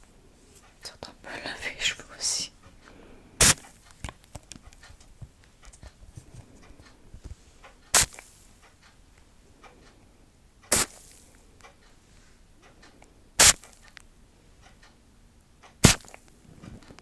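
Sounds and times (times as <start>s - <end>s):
loud sharp clicks: 3.4s - 5.9s, 7.9s - 9.0s, 10.7s - 11.8s, 12.8s - 14.1s, 15.6s - 16.4s
faint small taps and ticks: 3.8s - 7.8s.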